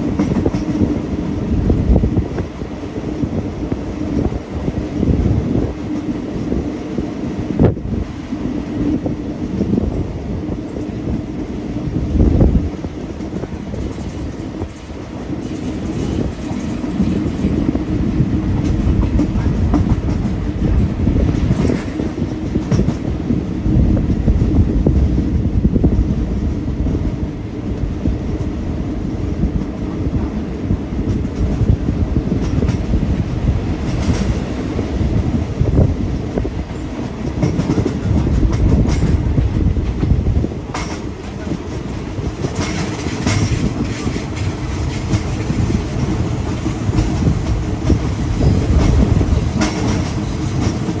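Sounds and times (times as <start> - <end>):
train rumbling on rails: 0.0 - 51.0
wheels clicking over rail joints: 13.1 - 23.1, 31.0 - 51.0.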